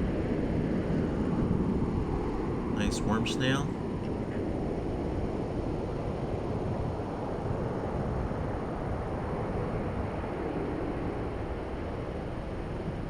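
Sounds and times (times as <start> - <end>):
ocean surf rushing: 1.8 - 4.0.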